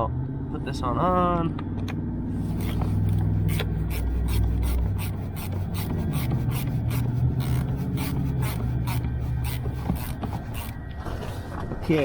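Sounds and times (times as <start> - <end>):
steady low hum: 0.0 - 11.9
hand tool scraping strokes: 2.4 - 11.5.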